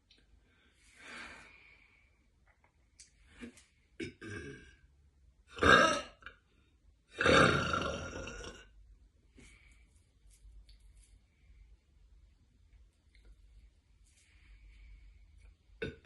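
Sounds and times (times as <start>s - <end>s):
woman burping: 4.0s - 4.8s, 5.5s - 6.4s, 7.2s - 8.7s, 15.8s - 16.0s.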